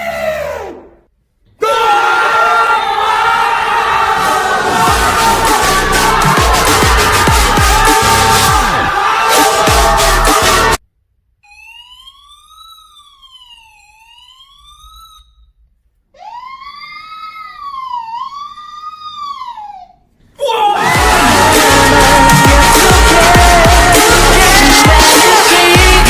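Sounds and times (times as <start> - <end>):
siren wailing: 3.3 - 10.8, 11.4 - 15.6, 20.8 - 26.0
person imitating a siren: 11.4 - 15.4, 16.2 - 20.1.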